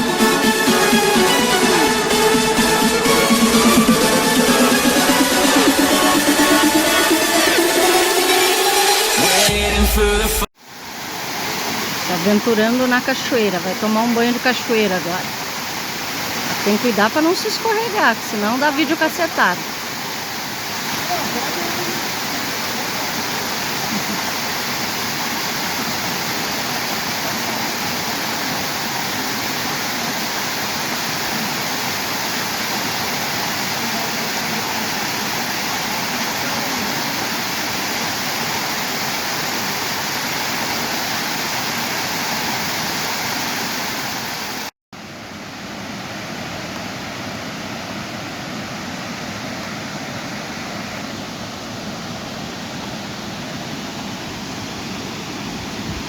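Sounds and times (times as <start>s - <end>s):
waterfall pouring: 11.0s - 44.7s.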